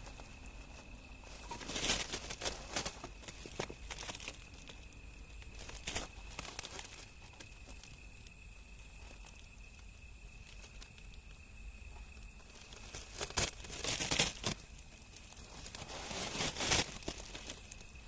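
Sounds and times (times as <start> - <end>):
rustling crackling bursts: 0.0 - 8.2, 12.4 - 18.0.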